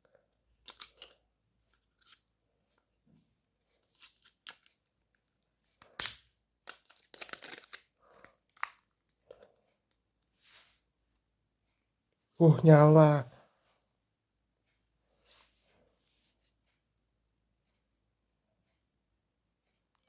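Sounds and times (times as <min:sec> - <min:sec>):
plastic packaging rustling: 0:06.7 - 0:07.9.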